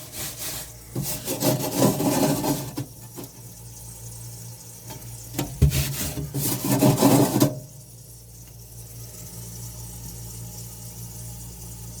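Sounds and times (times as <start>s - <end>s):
rubbing and scraping: 0.0s - 2.9s, 5.6s - 7.6s.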